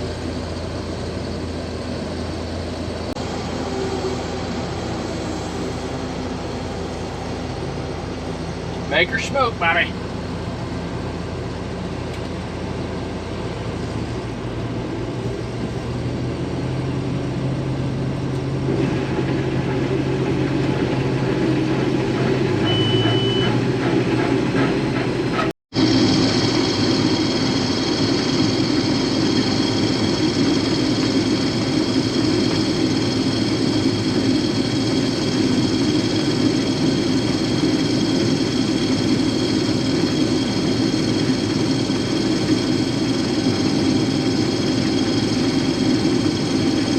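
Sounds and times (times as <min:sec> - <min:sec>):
diesel engine running: 0:00.0 - 0:46.9
machinery whine: 0:00.0 - 0:46.9
short high beep: 0:22.6 - 0:23.6.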